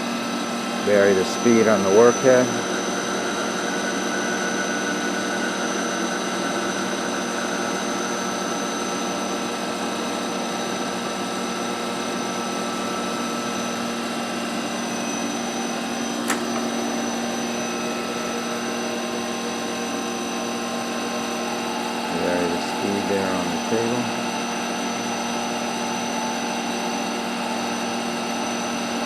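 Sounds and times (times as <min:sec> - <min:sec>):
grinder machine hum with whine: 0:00.0 - 0:29.0
short click: 0:16.3 - 0:16.6.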